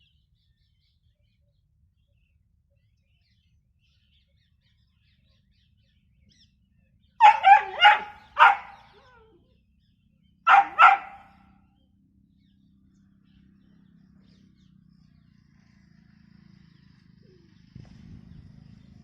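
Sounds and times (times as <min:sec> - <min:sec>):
dog barking: 0:07.2 - 0:09.2, 0:10.5 - 0:11.3.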